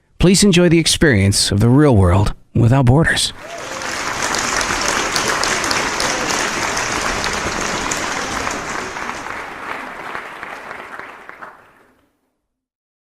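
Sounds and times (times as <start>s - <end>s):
crowd applauding: 3.4s - 12.2s.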